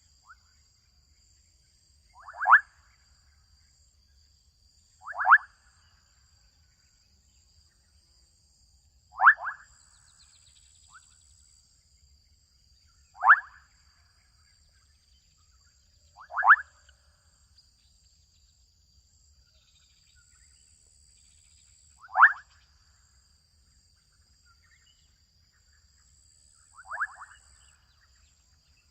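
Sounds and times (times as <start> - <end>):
frogs calling: 2.1 - 3.2, 5.0 - 6.3, 9.1 - 11.3, 13.0 - 14.7, 16.1 - 17.1, 22.0 - 22.9, 26.5 - 28.9.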